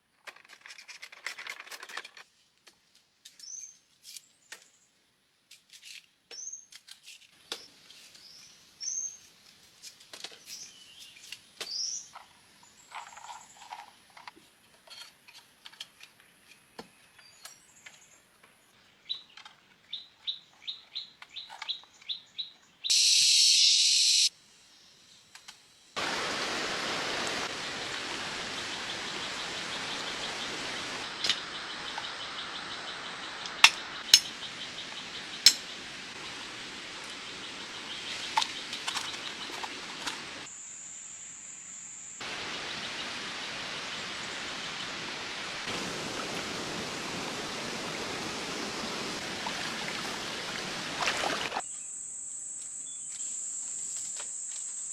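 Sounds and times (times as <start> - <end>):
short buzzing burst: 22.9 - 24.3
steady rushing hiss: 22.9 - 51.6
birds chirping: 26.0 - 40.5.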